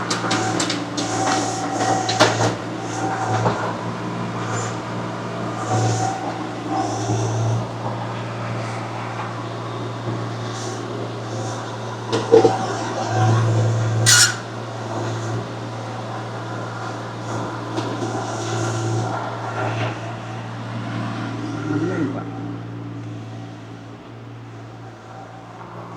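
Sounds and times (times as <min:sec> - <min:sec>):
earthmoving machine engine running: 0:00.0 - 0:25.9
short harsh scrape: 0:14.0 - 0:14.5.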